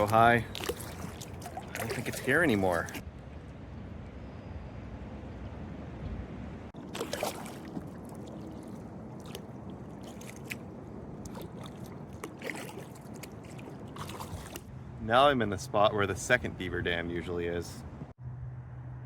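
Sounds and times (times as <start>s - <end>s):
paddle splashing in water: 0.0s - 3.0s, 6.8s - 14.7s
water rushing: 0.0s - 3.0s, 6.8s - 14.7s.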